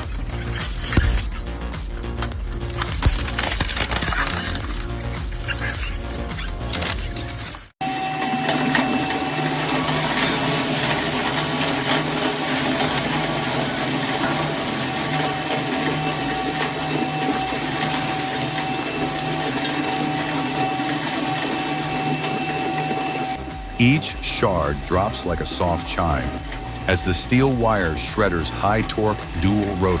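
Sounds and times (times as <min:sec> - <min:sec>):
material being cut grinding: 0:00.0 - 0:07.8
shredder motor drone: 0:00.0 - 0:30.0
steady whining tone: 0:00.0 - 0:30.0.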